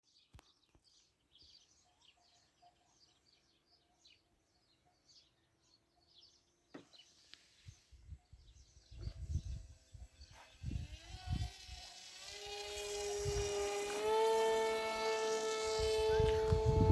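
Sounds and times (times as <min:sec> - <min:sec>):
wind buffeting microphone: 0:07.9 - 0:11.9, 0:12.5 - 0:16.9.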